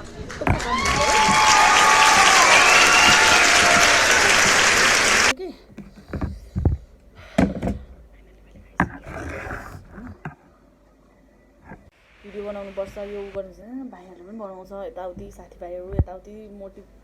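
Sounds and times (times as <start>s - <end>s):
crowd applauding and cheering: 0.0s - 5.3s.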